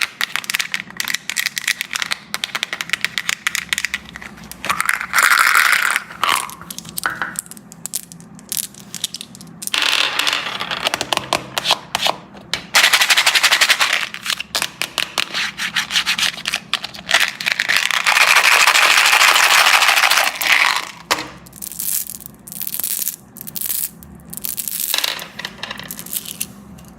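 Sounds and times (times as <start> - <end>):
candy wrapper crinkling: 16.4 - 24.9.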